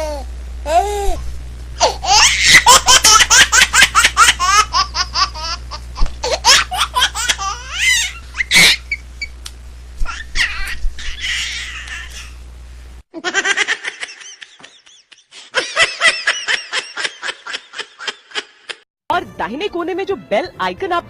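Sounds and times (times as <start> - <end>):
baby squealing: 1.8 - 3.2, 6.2 - 9.3, 10.0 - 12.4
baby laughing: 1.8 - 9.0, 10.0 - 12.4, 13.2 - 18.8.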